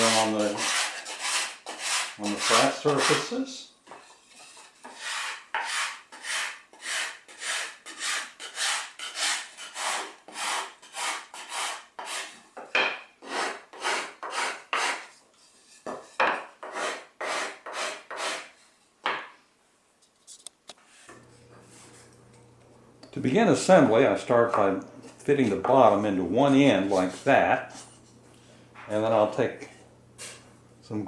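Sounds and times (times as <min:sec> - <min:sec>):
sanding block rubbing on wood: 0:00.0 - 0:03.3, 0:04.4 - 0:12.3, 0:13.2 - 0:15.0, 0:26.5 - 0:27.9.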